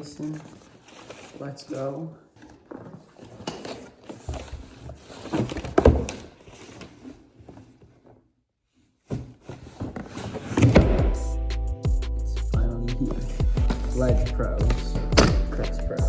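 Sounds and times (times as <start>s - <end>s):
loud thump: 10.6s - 11.3s.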